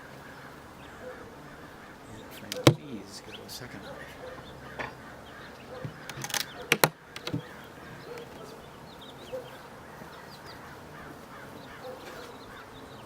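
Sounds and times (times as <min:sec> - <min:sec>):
birds chirping: 0:00.0 - 0:13.0
sharp knocks and clicks: 0:02.5 - 0:02.8, 0:05.8 - 0:08.4.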